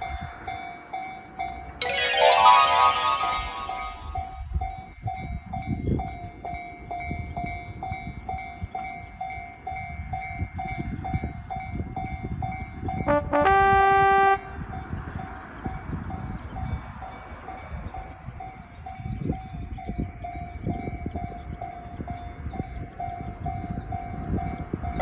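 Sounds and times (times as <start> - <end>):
train horn blast: 13.1 - 14.6.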